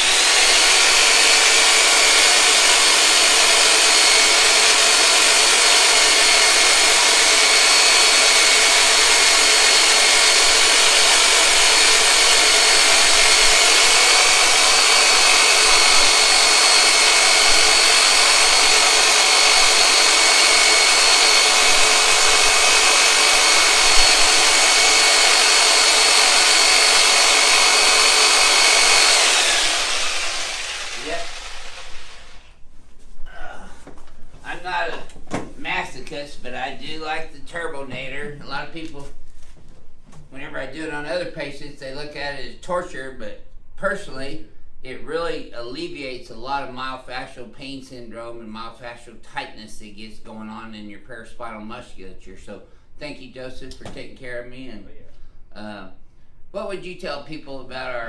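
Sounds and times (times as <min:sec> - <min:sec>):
massage tool motor humming: 0:00.0 - 0:32.6.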